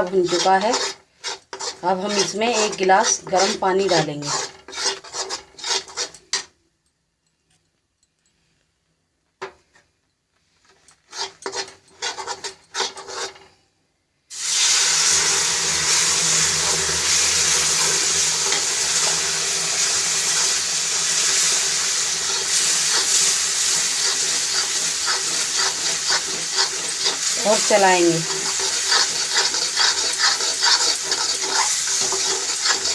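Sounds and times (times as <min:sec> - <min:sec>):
spoon scraping a pan: 0:00.0 - 0:06.5, 0:10.8 - 0:13.6, 0:15.9 - 0:32.9
loud sizzling: 0:01.6 - 0:05.9, 0:14.3 - 0:32.9.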